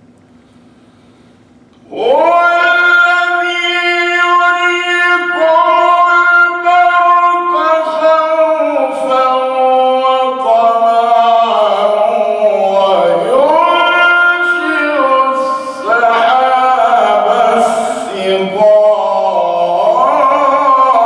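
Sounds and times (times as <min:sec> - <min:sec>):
short breath: 0:00.4 - 0:01.5
man chanting melodically: 0:01.8 - 0:21.0.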